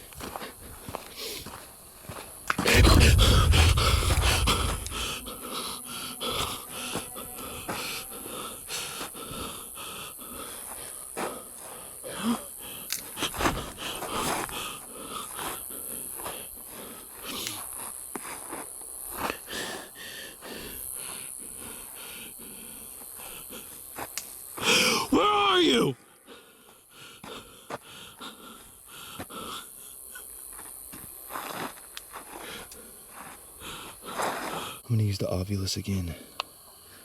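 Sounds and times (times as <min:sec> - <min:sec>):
night insects droning: 0:00.0 - 0:37.0
loud low thump: 0:02.6 - 0:05.3
person wheezy breathing: 0:02.6 - 0:17.6, 0:24.6 - 0:25.1.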